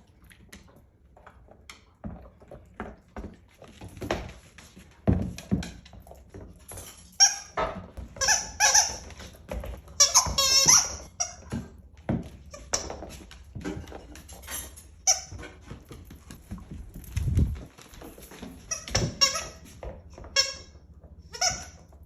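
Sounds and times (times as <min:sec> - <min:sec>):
dog squeaking: 0:10.0 - 0:11.2.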